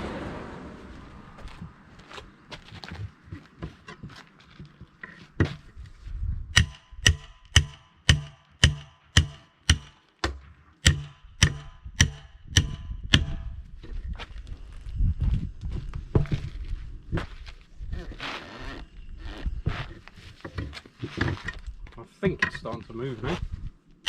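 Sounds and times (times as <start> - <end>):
hammer striking steel rim: 6.6 - 13.5.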